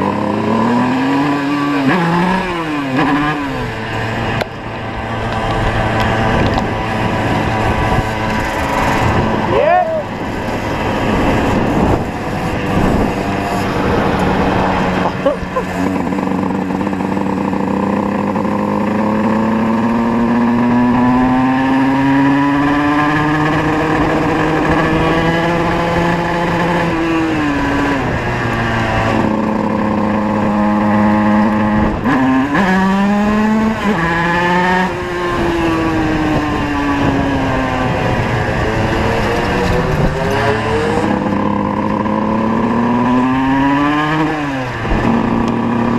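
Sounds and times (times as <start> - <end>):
moped engine revving: 0.0 - 45.9
moped engine steady note: 2.2 - 21.2.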